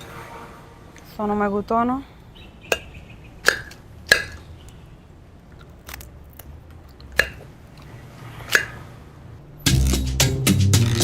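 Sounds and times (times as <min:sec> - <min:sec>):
music with percussive beat: 0:09.7 - 0:11.0.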